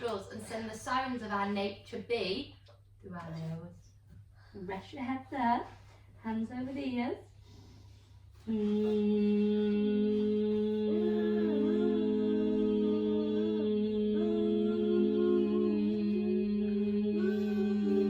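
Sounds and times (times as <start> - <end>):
people humming together: 8.5 - 18.0.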